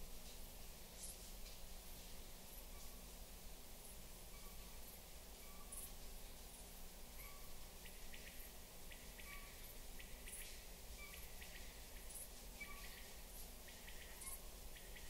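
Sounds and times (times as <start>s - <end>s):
steady hiss: 0.0s - 15.0s
bird calls: 4.3s - 6.0s, 7.1s - 15.0s.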